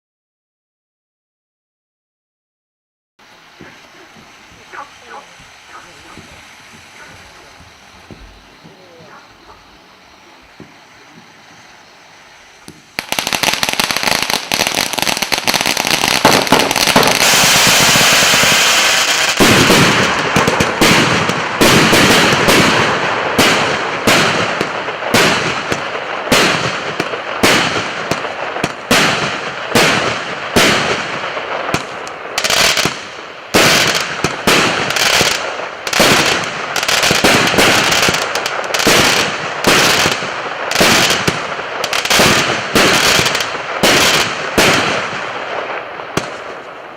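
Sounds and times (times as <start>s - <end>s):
firework crackling hiss: 3.2s - 46.9s
firework shots launching: 3.4s - 9.8s, 10.6s - 46.9s.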